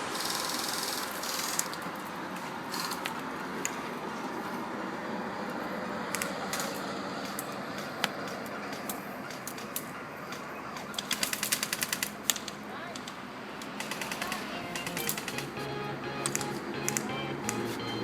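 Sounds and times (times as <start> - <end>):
airsoft gun shots: 13.8 - 15.6.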